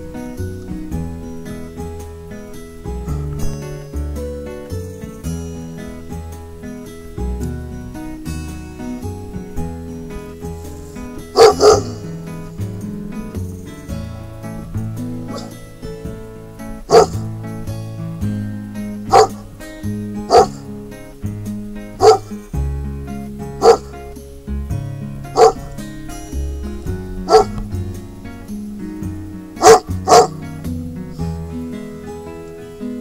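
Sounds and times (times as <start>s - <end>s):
background music: 0.0s - 33.0s
dog barking: 11.3s - 12.1s, 15.3s - 15.5s, 16.9s - 17.2s, 19.1s - 19.4s, 20.3s - 20.6s, 22.0s - 22.3s, 23.6s - 23.9s, 25.3s - 25.7s, 27.3s - 27.6s, 29.6s - 30.4s.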